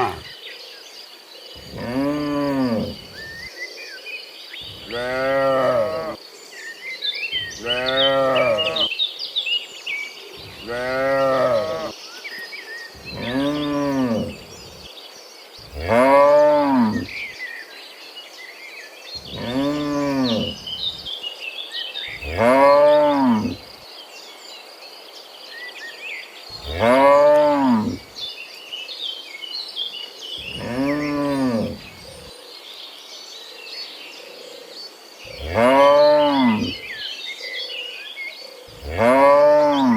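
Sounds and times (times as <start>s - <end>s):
cattle mooing: 0.0s - 0.3s, 1.6s - 3.4s, 4.7s - 6.2s, 7.4s - 8.9s, 10.4s - 11.9s, 13.0s - 14.8s, 15.7s - 17.2s, 19.2s - 21.1s, 22.2s - 23.7s, 26.6s - 28.0s, 30.4s - 32.2s, 35.3s - 36.8s, 38.8s - 39.9s
high insect whine: 1.2s - 9.0s, 10.2s - 17.9s, 19.0s - 25.7s
bird chirps: 1.6s - 17.6s, 18.4s - 23.9s.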